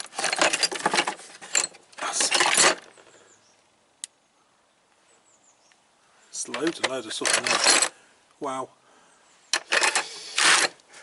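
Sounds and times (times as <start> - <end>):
metal hand tools clattering: 0.0 - 2.9, 6.6 - 7.9.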